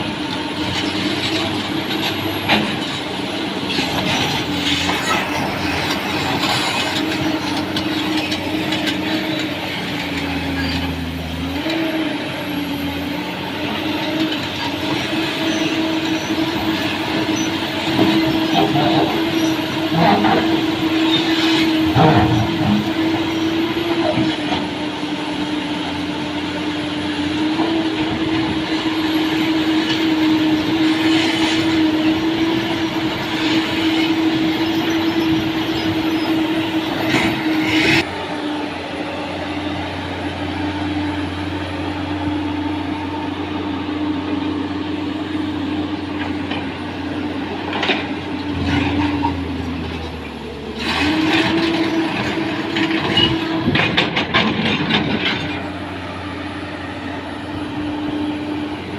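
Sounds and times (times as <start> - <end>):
excavator engine drone: 0.0 - 58.9
clatter: 50.8 - 55.6.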